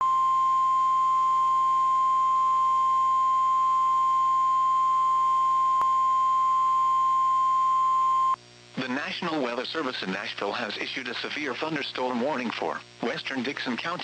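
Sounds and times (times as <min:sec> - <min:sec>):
loud high pure alarm tone: 0:00.0 - 0:08.4.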